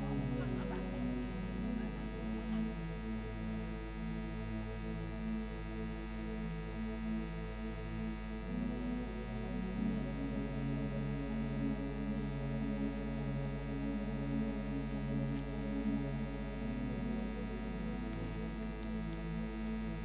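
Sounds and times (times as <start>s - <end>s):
electrical mains hum: 0.0s - 20.0s.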